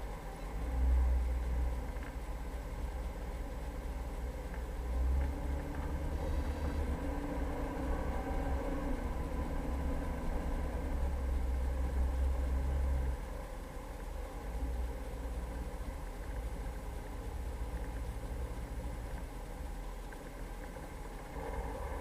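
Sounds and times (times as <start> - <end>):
vehicle engine and drivetrain rumble: 0.0 - 22.0.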